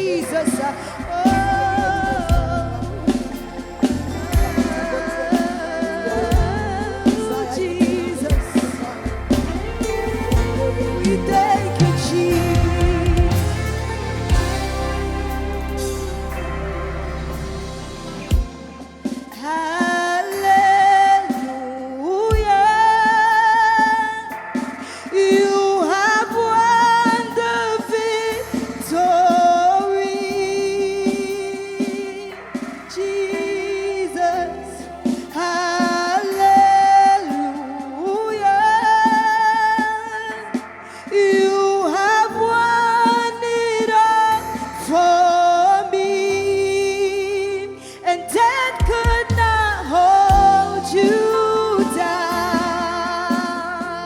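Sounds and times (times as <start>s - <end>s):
gospel singers with vibrato: 0.0s - 54.0s
bass chords: 0.7s - 19.2s.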